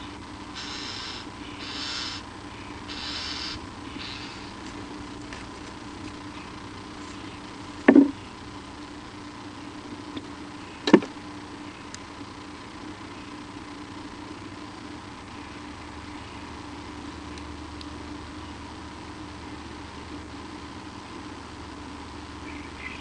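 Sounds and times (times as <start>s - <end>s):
soft hissing breaths: 0.0s - 5.2s
electrical hum: 0.0s - 23.0s.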